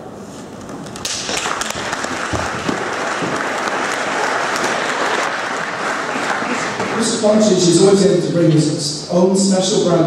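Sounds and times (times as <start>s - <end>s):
audience applauding: 1.0s - 7.5s.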